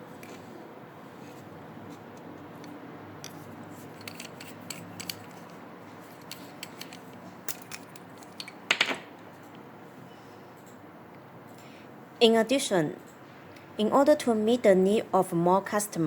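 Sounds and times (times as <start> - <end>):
plastic parts clicking: 3.2 - 9.1.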